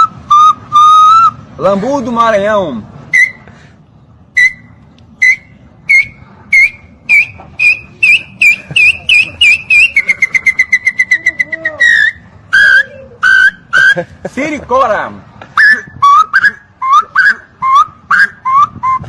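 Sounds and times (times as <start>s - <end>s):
bird whistled notes: 4.4s - 14.0s.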